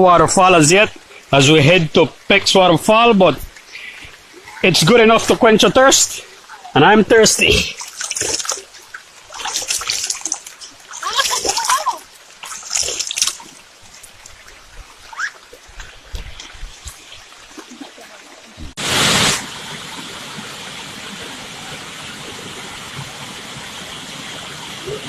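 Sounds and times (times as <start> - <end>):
waterfall rushing: 0.0 - 7.8, 17.7 - 25.0
faint water trickle with clicks: 0.0 - 18.8
stream water splashing: 0.0 - 25.0.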